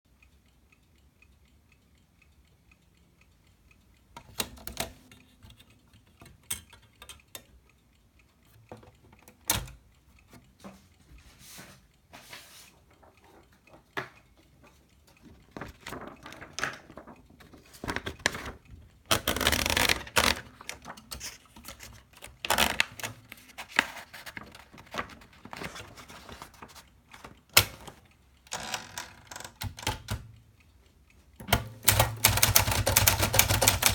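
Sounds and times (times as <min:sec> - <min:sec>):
typewriter mechanism clicking: 0:17.6 - 0:30.3, 0:31.4 - 0:33.9
typewriter rasp: 0:19.1 - 0:21.8, 0:31.5 - 0:33.9.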